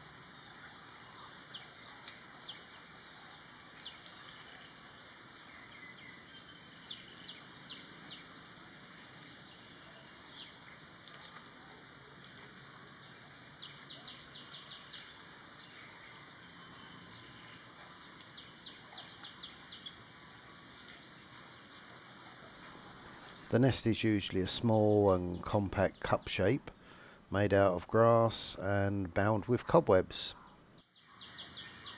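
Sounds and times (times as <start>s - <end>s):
faint steady hiss: 0.0s - 31.9s
birds chirping: 9.2s - 20.1s, 20.7s - 31.9s.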